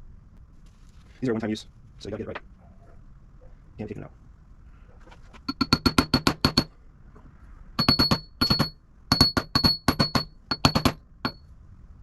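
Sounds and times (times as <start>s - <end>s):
hammer striking metal: 5.5s - 6.7s, 7.8s - 11.4s.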